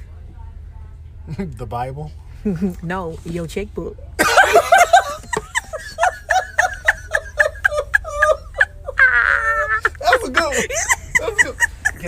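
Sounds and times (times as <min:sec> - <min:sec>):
person laughing hard: 0:04.2 - 0:12.0.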